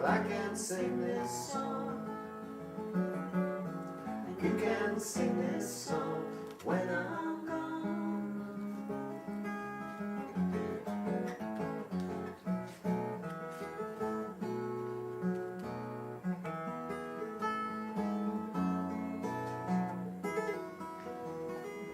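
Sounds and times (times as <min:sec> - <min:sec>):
acoustic guitar playing: 0:00.0 - 0:21.9.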